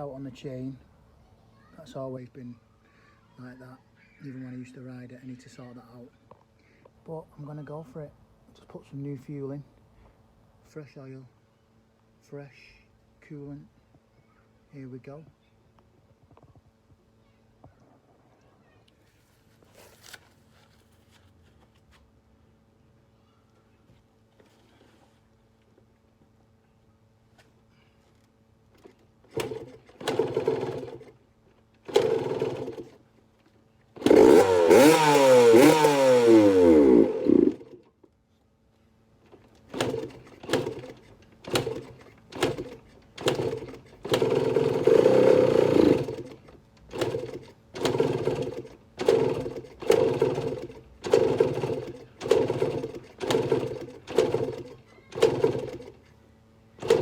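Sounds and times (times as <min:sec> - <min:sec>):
two-stroke engine running loudly: 0:31.9 - 0:33.0, 0:34.0 - 0:37.8, 0:39.7 - 0:46.4, 0:47.0 - 0:55.9, 0:56.8 - 0:57.0.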